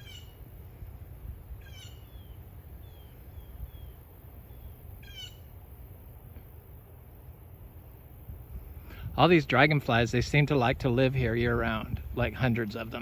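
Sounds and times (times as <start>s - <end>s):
harsh falling bird calls: 0.0s - 0.5s, 1.5s - 5.6s.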